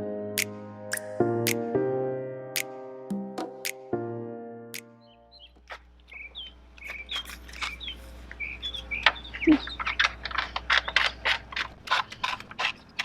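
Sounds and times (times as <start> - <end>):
small birds chirping: 5.0 - 13.0.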